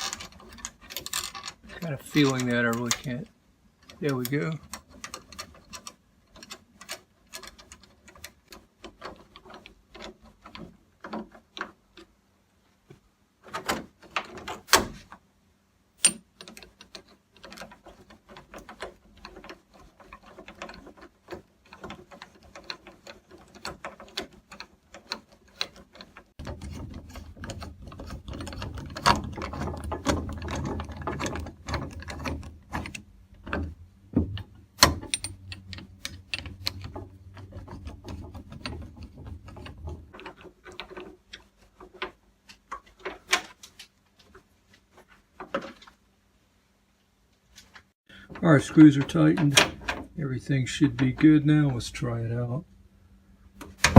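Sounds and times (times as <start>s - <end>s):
screwdriver clicks and metallic rattles: 0.0s - 12.1s, 16.0s - 43.9s.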